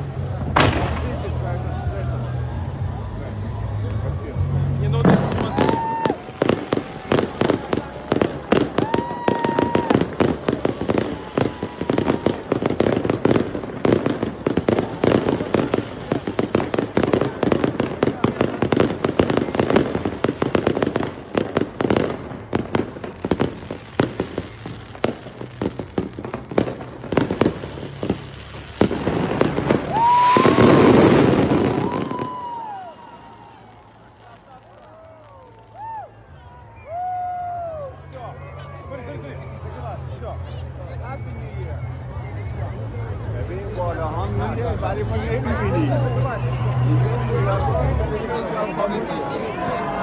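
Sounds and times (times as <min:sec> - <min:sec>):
fireworks bangs and crackling: 0:00.0 - 0:50.0
whistling firework shells: 0:28.8 - 0:34.4.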